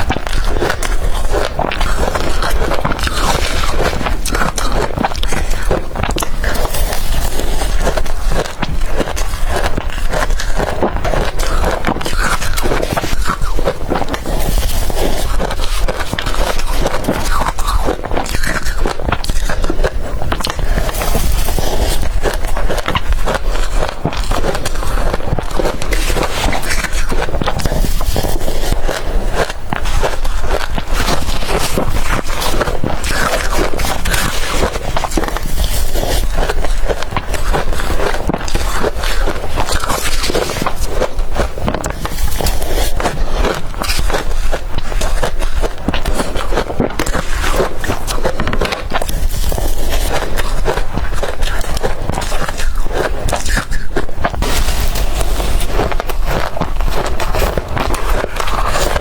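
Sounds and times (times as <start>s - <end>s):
person crunching ice: 0.0s - 59.0s.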